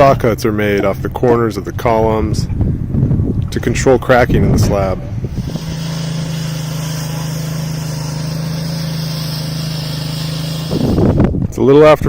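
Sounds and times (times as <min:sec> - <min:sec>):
concrete saw engine running: 0:05.3 - 0:11.3.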